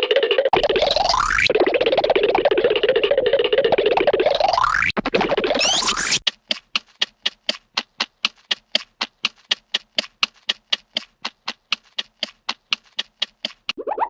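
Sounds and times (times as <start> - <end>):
sharp evenly spaced taps: 5.7 - 13.8.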